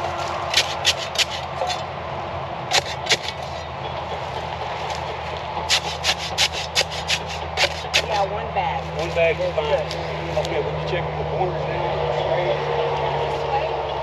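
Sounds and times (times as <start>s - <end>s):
sharp crunches and scrapes: 0.0s - 1.9s, 2.7s - 3.7s, 4.8s - 8.3s
tractor engine idling: 0.0s - 14.0s.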